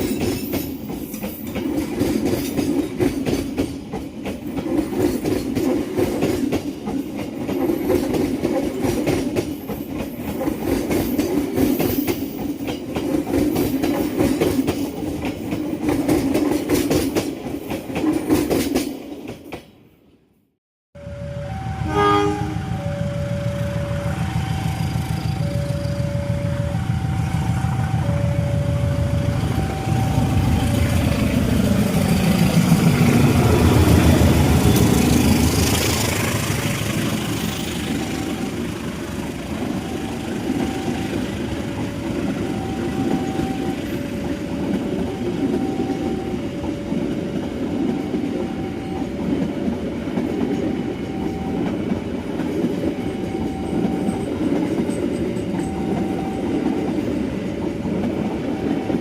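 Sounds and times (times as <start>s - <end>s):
locomotive rumble: 21.0s - 47.0s
level crossing warning tones: 21.0s - 59.0s.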